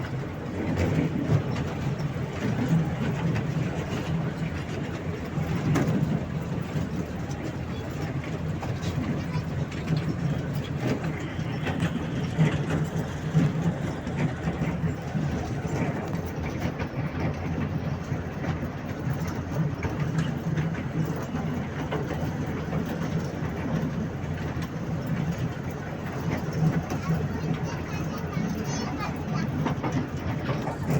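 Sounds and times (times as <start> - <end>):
toy train engine hum: 0.0 - 30.9
wheels clicking over rails: 0.0 - 30.9.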